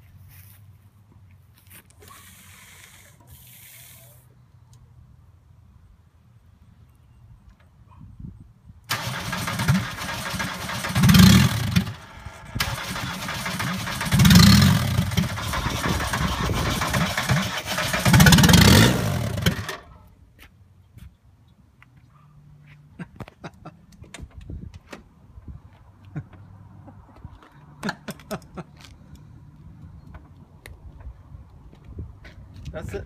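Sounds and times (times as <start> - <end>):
diesel engine cranking: 8.9 - 20.0.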